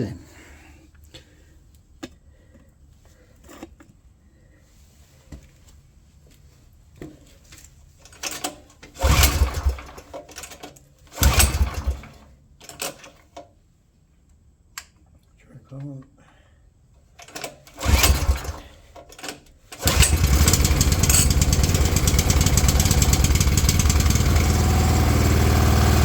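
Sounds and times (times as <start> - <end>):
petrol engine pull-start rattle: 8.1 - 13.3, 17.2 - 26.0
handling clicks and knocks: 19.0 - 21.7.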